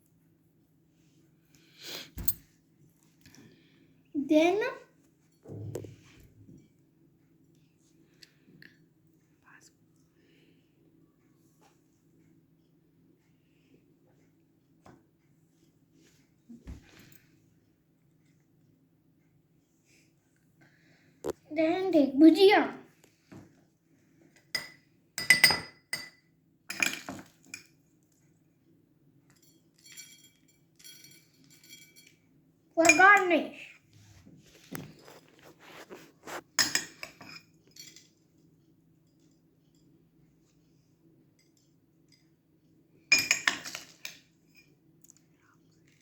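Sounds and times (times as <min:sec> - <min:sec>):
utensil clinking against a dish: 0:24.5 - 0:27.8, 0:29.3 - 0:32.2.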